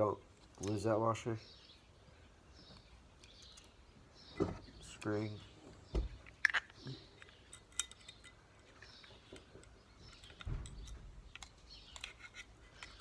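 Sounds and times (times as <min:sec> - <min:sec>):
light metallic clicks and clinks: 0:00.4 - 0:01.0, 0:03.2 - 0:03.8, 0:06.2 - 0:13.0.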